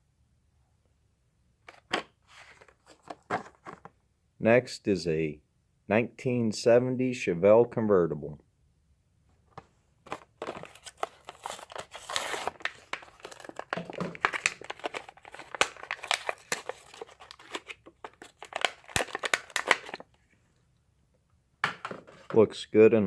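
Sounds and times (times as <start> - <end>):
plastic packaging crinkling and tearing: 10.1 - 20.1.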